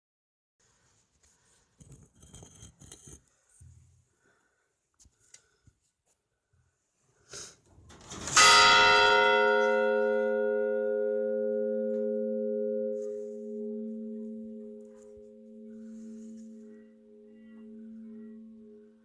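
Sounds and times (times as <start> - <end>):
bell clang: 8.4 - 19.0.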